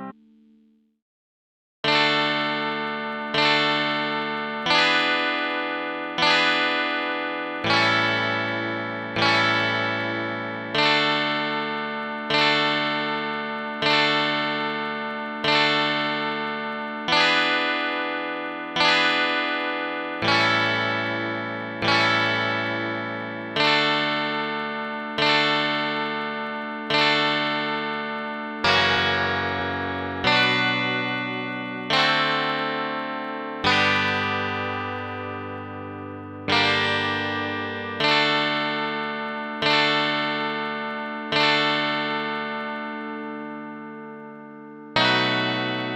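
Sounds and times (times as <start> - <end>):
synthesized plucked-string chords: 45.0 - 45.9.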